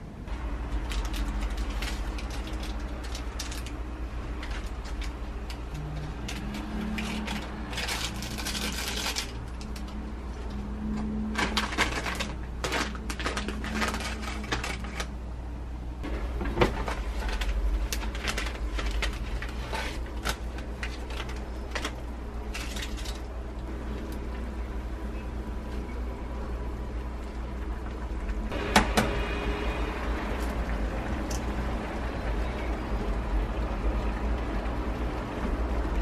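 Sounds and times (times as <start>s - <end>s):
objects clicking and clattering: 16.0s - 23.3s.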